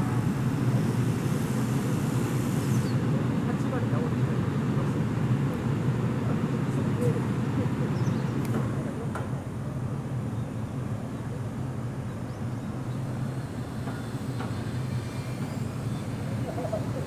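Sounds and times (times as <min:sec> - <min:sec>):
electric train humming: 0:09.8 - 0:17.0.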